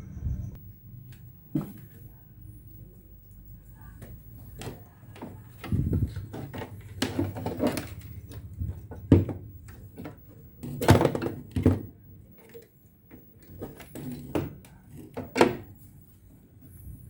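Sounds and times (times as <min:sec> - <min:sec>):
objects knocking on a workbench: 0:08.7 - 0:10.2.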